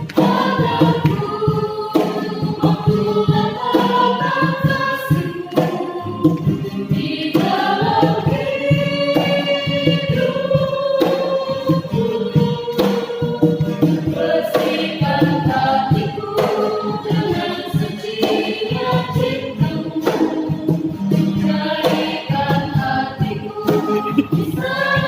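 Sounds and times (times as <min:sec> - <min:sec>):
youth choir singing: 0:00.0 - 0:25.0
sharp beat struck: 0:21.8 - 0:25.0.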